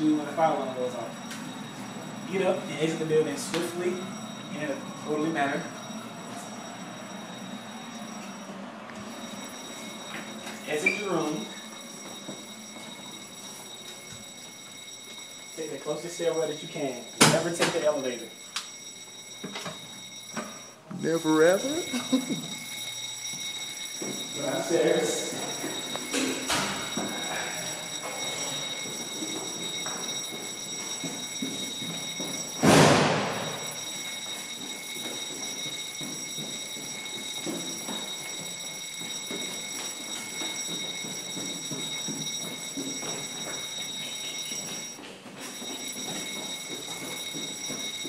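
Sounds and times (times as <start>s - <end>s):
fire alarm steady high tone: 0.0s - 48.0s
heavy door banging: 32.6s - 33.6s.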